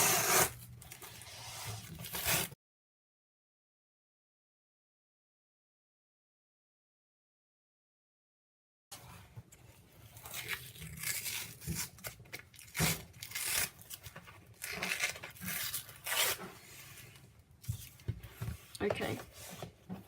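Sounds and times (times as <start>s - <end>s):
tape tearing off packaging: 0.0s - 2.6s, 10.2s - 16.9s.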